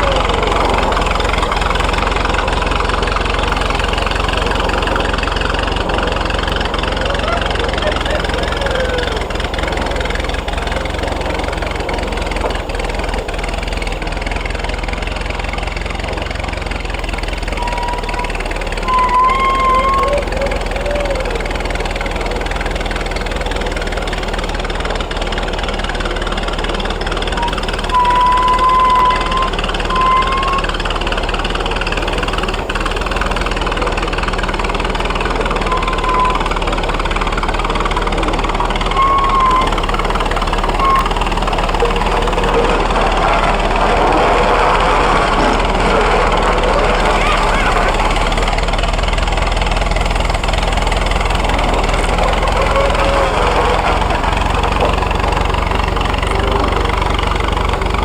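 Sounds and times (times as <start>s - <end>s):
wavering high squeal: 0.0s - 15.3s, 17.0s - 24.6s, 27.4s - 30.8s, 34.8s - 37.5s, 38.7s - 43.8s, 44.8s - 48.6s
road roller engine running: 0.0s - 58.0s.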